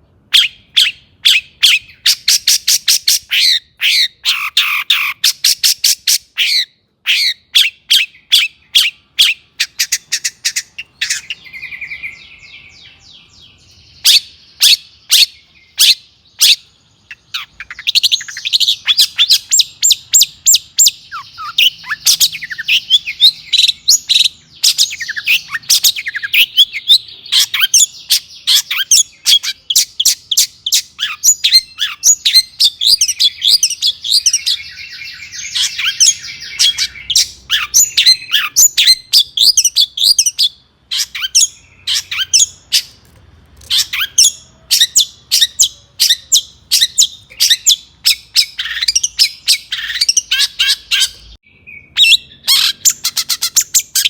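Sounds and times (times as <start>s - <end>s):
shrike singing: 0.1s - 43.0s.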